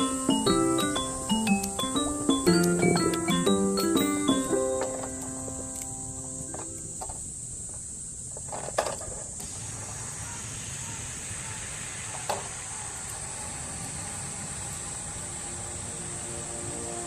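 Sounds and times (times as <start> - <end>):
food sizzling in a pan: 9.4 - 17.0.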